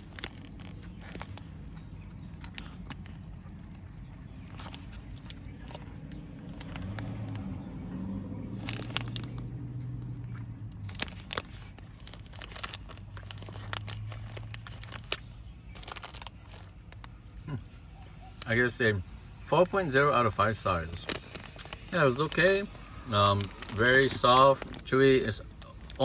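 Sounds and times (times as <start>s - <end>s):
person chewing: 0.0s - 19.4s, 21.0s - 22.0s.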